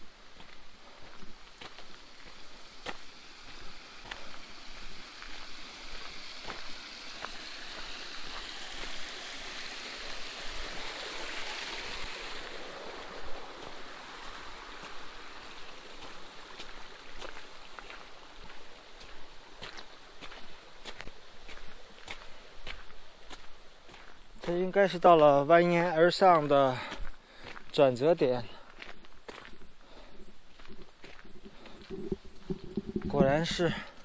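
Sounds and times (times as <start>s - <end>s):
stream water rushing: 0.0s - 28.4s, 30.2s - 34.0s.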